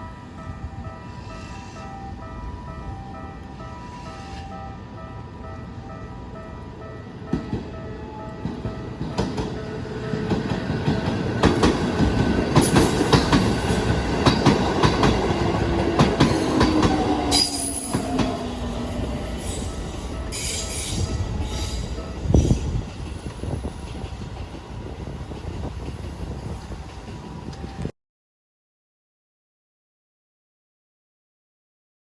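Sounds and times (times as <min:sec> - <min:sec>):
train wheels clacking over rail joints: 0:08.5 - 0:24.7
high wheel squeals: 0:16.3 - 0:22.8.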